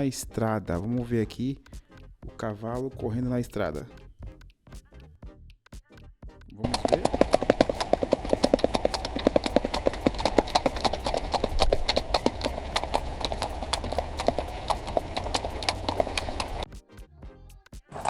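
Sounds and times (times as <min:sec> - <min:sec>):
horse hoofbeats on road: 0:06.6 - 0:16.7.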